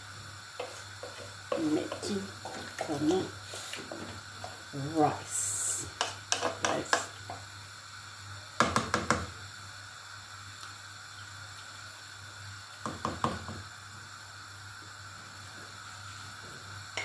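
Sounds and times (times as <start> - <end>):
spoon knocking against a pot: 6.0 - 7.4, 8.6 - 9.3.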